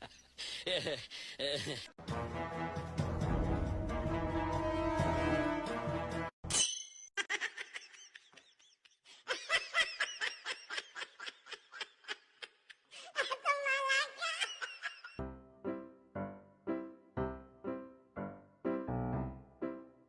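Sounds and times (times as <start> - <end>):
music: 2.0 - 6.4, 15.2 - 20.0
high-pitched laughter: 7.2 - 15.2.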